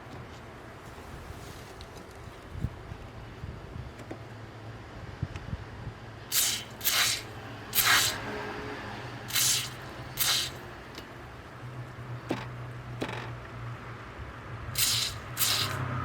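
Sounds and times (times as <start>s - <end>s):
short spray bursts: 6.3s - 8.3s, 9.3s - 10.6s, 14.8s - 15.9s.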